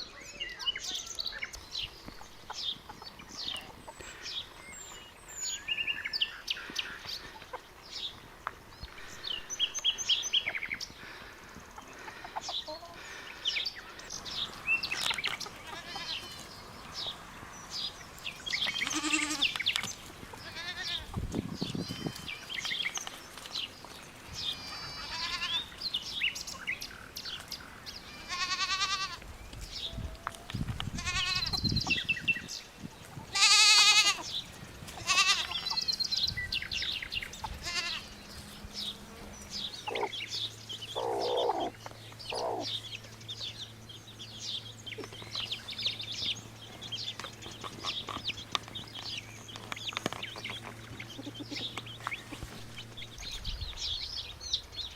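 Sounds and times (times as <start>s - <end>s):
small birds chirping: 0.0s - 54.9s
goats bleating: 15.5s - 16.5s, 18.6s - 19.6s, 20.2s - 21.2s, 24.4s - 25.8s, 28.0s - 29.2s, 30.9s - 31.6s, 33.2s - 35.9s, 37.4s - 38.2s.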